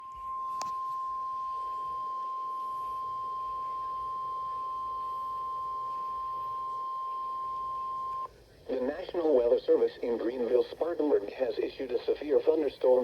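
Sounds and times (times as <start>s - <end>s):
steady alarm tone: 0.0s - 8.3s.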